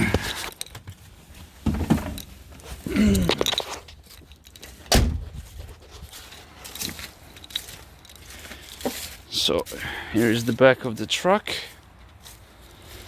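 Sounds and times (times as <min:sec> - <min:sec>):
knocks and shuffling handling: 0:00.0 - 0:13.0
door shutting with heavy thunk: 0:04.9 - 0:05.3.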